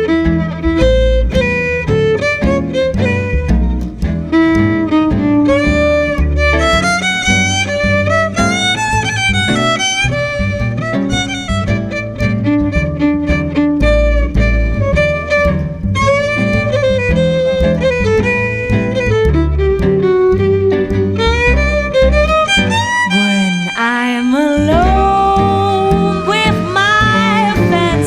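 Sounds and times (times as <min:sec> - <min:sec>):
bass and rhythm accompaniment: 0:00.0 - 0:28.0
violin melody: 0:00.0 - 0:28.0.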